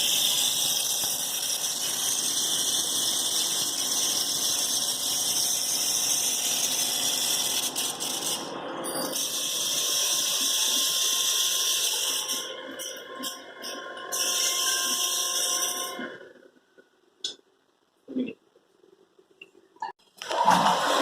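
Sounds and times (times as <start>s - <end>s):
water flushing: 20.2s - 21.0s.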